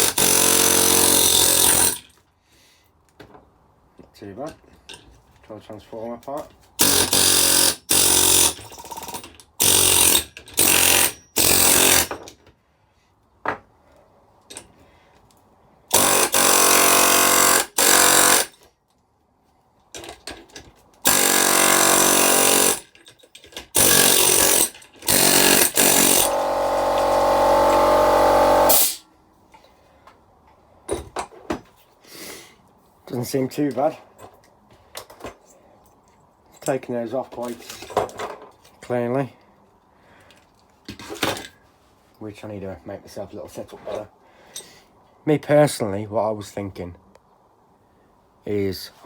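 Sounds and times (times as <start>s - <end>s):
air hammer rapid hammering: 23.8s - 29.0s.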